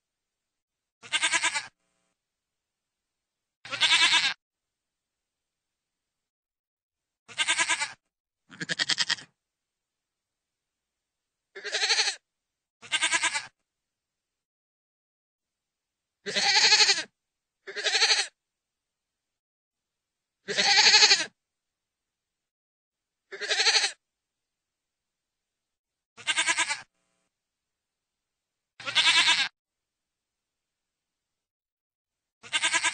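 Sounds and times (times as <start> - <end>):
goat bleating: 1.0 - 1.8, 3.7 - 4.4, 7.3 - 9.3, 11.6 - 12.2, 12.8 - 13.6, 16.2 - 17.1, 17.7 - 18.4, 20.5 - 21.3, 23.3 - 24.0, 26.2 - 26.9, 28.8 - 29.5, 32.4 - 32.9.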